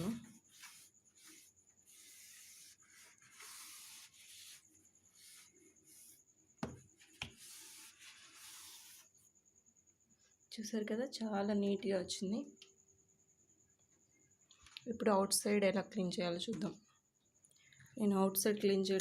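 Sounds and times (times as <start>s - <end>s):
cloth rubbing inside fridge: 0.0s - 9.2s.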